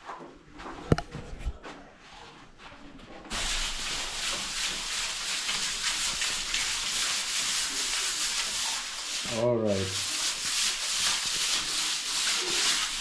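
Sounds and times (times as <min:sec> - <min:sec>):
rubbing scraping hiss: 0:03.3 - 0:13.0.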